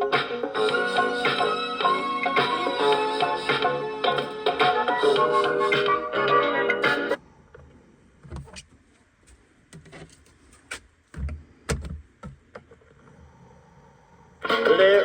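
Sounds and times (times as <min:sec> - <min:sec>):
record player clicks and knocks: 0:09.7 - 0:12.8.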